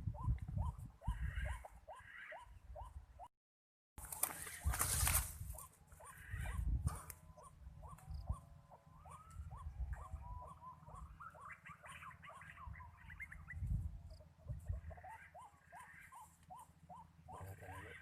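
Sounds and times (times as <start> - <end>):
bird calling in upward-hooked notes: 7.2 - 18.0.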